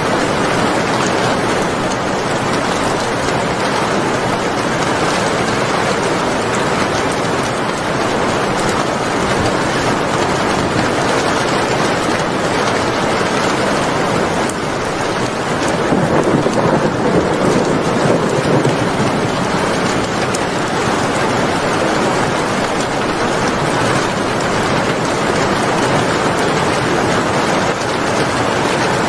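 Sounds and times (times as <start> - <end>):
heavy rain falling: 0.0 - 29.0
low thunder rumble: 14.7 - 24.8.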